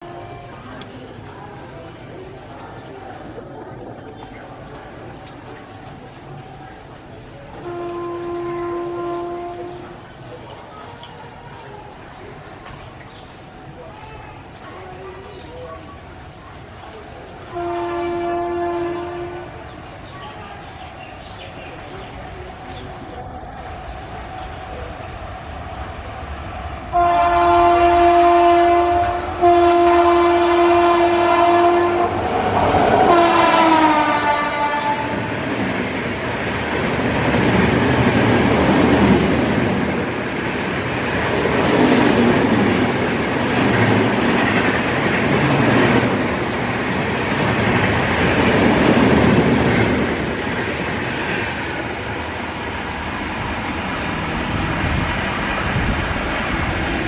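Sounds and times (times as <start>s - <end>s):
train wheel clatter: 0.0s - 30.1s, 32.0s - 57.0s
train coaches rushing past: 0.0s - 57.0s
locomotive horn two-tone blasts: 7.6s - 9.9s, 17.5s - 19.5s, 26.9s - 32.2s, 33.1s - 35.3s.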